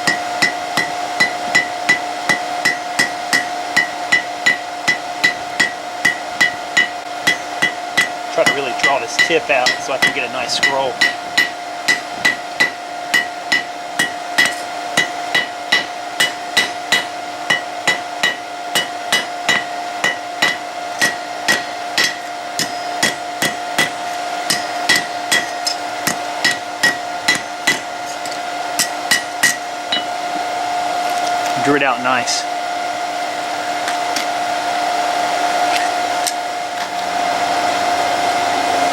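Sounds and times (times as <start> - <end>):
hammer striking steel on anvil: 0.0 - 30.2
steady hum: 0.0 - 38.9.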